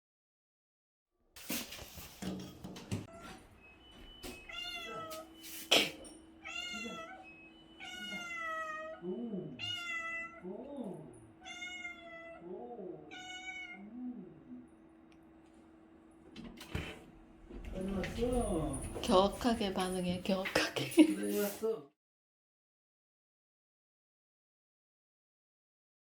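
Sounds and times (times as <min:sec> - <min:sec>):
cat meowing: 0:04.4 - 0:05.3, 0:06.4 - 0:10.5, 0:11.4 - 0:13.9.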